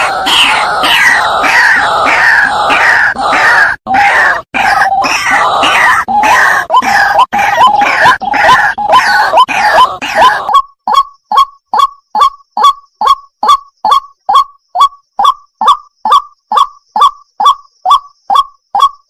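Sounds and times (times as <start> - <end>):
waterhen calling: 0.0 - 10.6.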